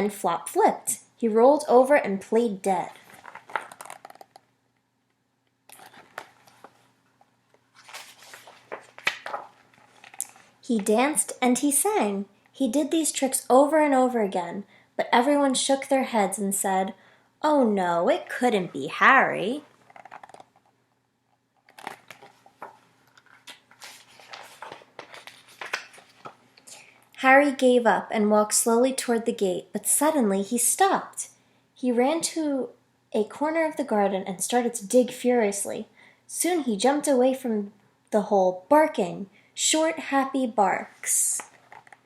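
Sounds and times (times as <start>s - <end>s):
paper pages rustling: 2.9s - 4.4s, 5.7s - 6.9s, 7.5s - 10.9s, 19.8s - 20.7s, 21.6s - 26.7s, 41.4s - 42.0s.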